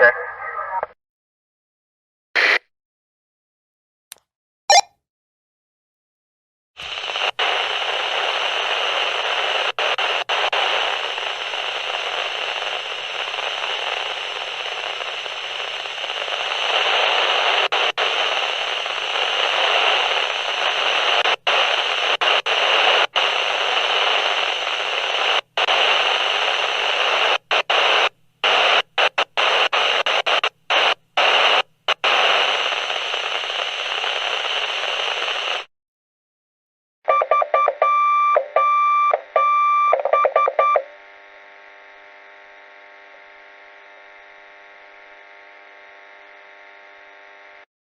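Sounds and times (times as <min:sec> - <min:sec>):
walkie-talkie radio static: 0:00.0 - 0:01.0, 0:02.4 - 0:02.6, 0:06.8 - 0:35.7.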